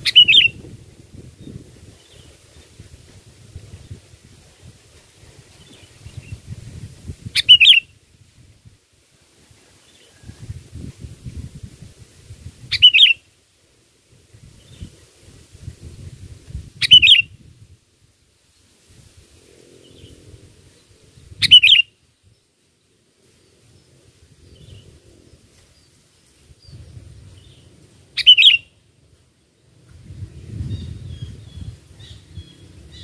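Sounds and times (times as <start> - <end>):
bird calling: 0.0 - 0.6, 7.4 - 7.9, 12.7 - 13.2, 16.8 - 17.2, 21.4 - 21.9, 28.2 - 28.7.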